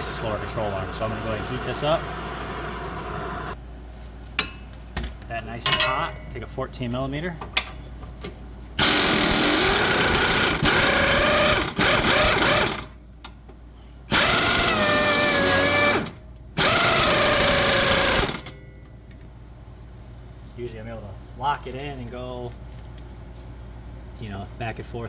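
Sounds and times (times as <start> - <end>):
impact wrench whining bursts: 0.0 - 3.6, 8.8 - 13.0, 14.1 - 18.5.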